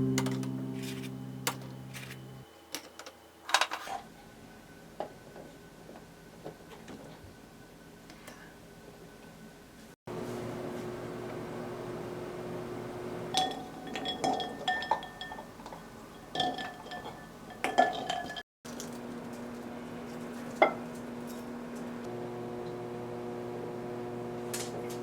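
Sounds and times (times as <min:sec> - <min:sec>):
kitchenware clinking and knocking: 0:13.4 - 0:18.4.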